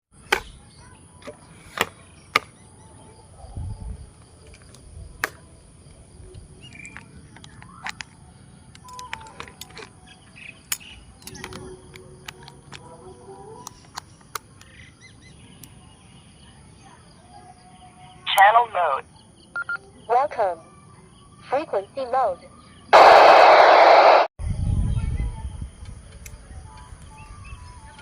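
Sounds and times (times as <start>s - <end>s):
steady high whine: 23.0s - 24.3s.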